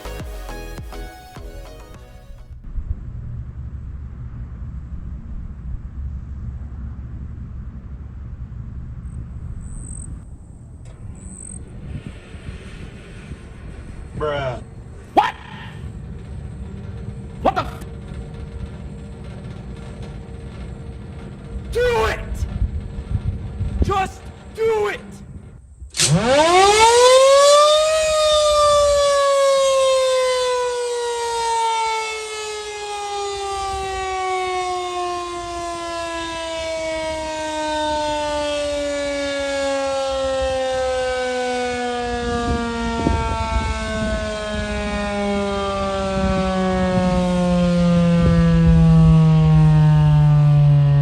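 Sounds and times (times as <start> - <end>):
low rumbling: 2.2 - 31.6, 41.4 - 51.0
warning siren wailing: 9.4 - 18.7, 26.0 - 51.0.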